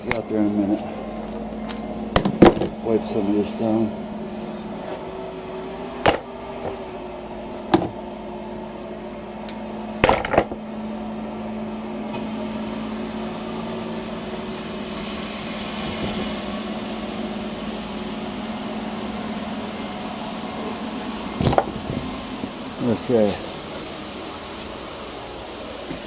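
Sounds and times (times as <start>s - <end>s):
steady machine hum: 0.0s - 26.0s
sharp knocks and clanks: 2.1s - 2.8s, 7.7s - 8.0s, 10.0s - 10.6s.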